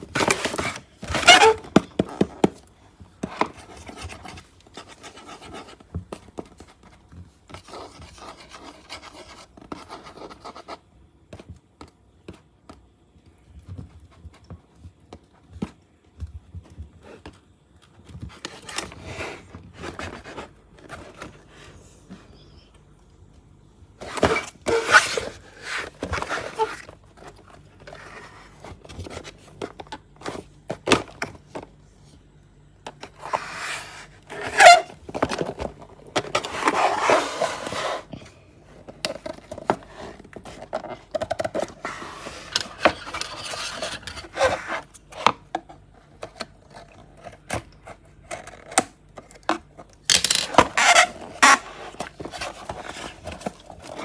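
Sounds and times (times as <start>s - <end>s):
packaging rustling and scraping: 0.0s - 10.8s, 18.0s - 21.8s, 24.0s - 31.7s, 32.9s - 54.0s.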